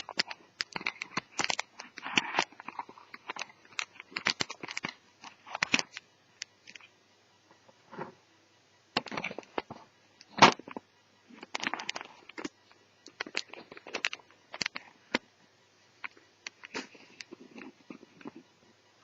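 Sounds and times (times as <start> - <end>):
small laptop parts clicking: 0.0 - 6.9, 11.4 - 15.2.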